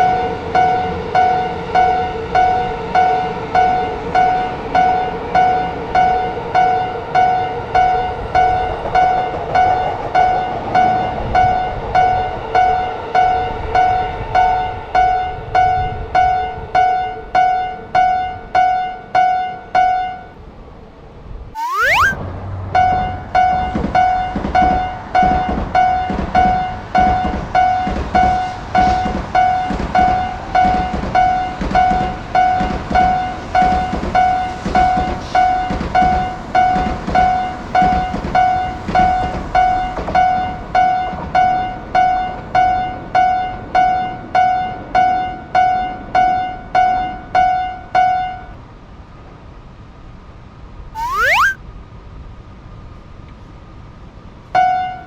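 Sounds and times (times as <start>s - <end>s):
train running past: 0.0s - 15.5s, 22.2s - 43.7s.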